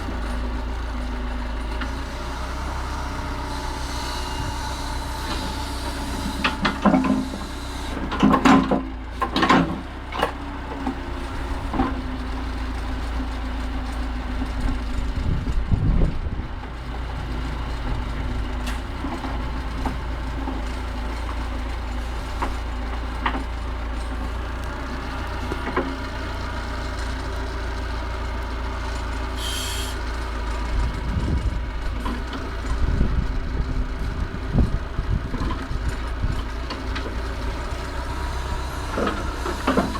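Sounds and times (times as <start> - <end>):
backhoe engine running: 0.0 - 39.9
machine clanks and knocks: 5.3 - 11.0, 38.9 - 39.9.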